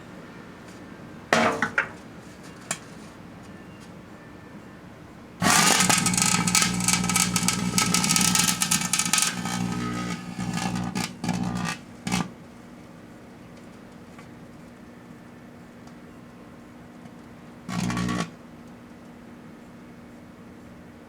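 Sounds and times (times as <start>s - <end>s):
microwave oven humming: 3.6s - 21.0s
firework hissing and crackling: 5.5s - 11.1s.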